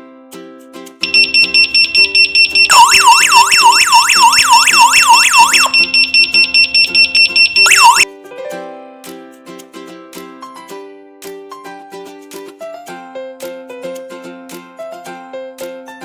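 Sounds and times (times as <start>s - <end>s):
rapid high-pitched alarm beeping: 1.0s - 8.0s
rising siren sweep: 1.2s - 8.0s.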